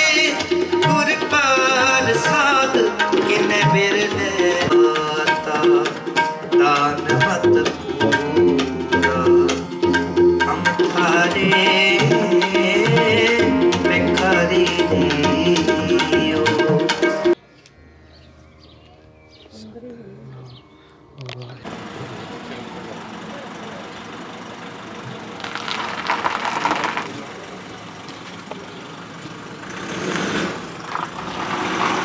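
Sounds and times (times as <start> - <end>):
person singing: 0.0 - 17.4, 19.5 - 21.6
tabla playing: 0.0 - 17.4.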